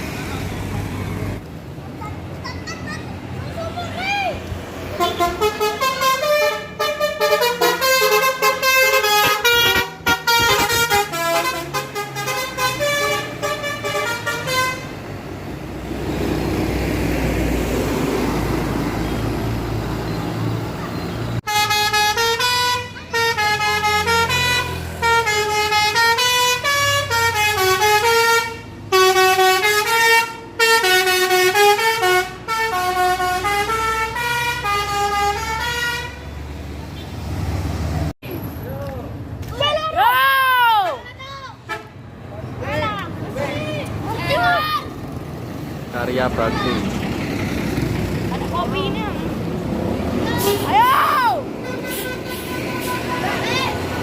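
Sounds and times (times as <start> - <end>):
bus engine rumbling past: 0.0 - 39.4, 41.5 - 54.0
musical air horn melody: 5.0 - 14.9, 21.4 - 36.2, 51.6 - 53.4.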